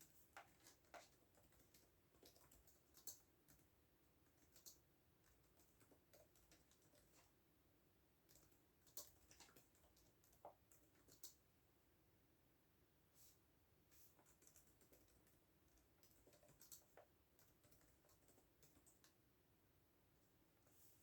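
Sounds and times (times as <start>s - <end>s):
faint keyboard typing: 0.0s - 7.4s, 8.2s - 11.6s, 13.9s - 19.4s.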